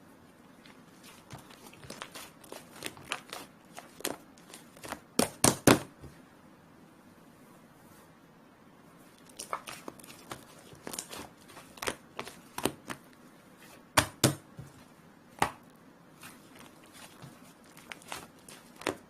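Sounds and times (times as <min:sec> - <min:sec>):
slime squishing with sticky pops: 0:00.6 - 0:05.9, 0:09.2 - 0:13.2, 0:15.4 - 0:19.0.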